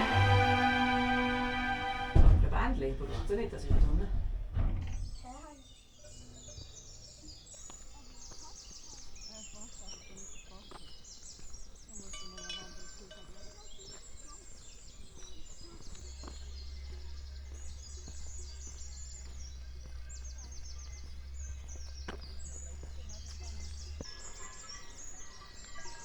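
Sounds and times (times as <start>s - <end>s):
steady low rumble: 0.0s - 5.2s, 15.9s - 24.1s
small birds chirping: 4.9s - 26.0s.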